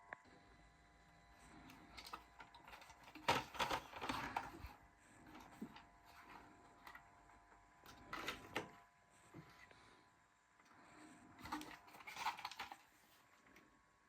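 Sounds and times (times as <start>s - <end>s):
faint clicks and rustles: 10.6s - 13.7s.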